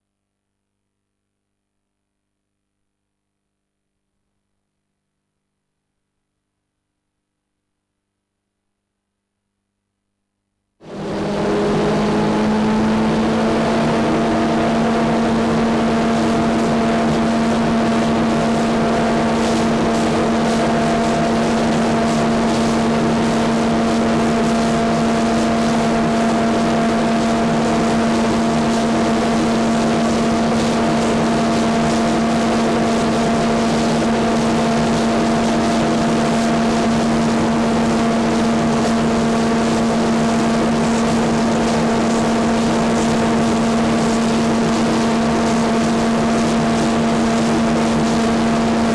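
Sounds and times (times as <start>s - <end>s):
sanding machine humming: 10.8s - 35.7s.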